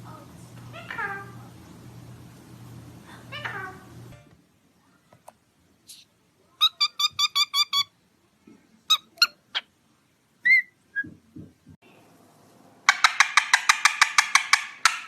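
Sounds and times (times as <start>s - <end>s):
parrot calling: 0.6s - 2.0s, 3.0s - 4.1s, 6.6s - 8.0s, 8.9s - 9.8s, 10.4s - 10.8s, 12.9s - 15.0s
parrot whistle: 10.4s - 11.1s.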